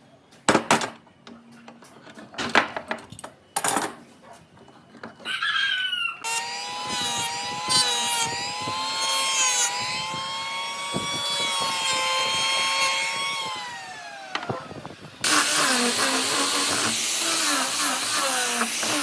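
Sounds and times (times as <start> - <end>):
power tool motor whining: 6.2 - 19.0.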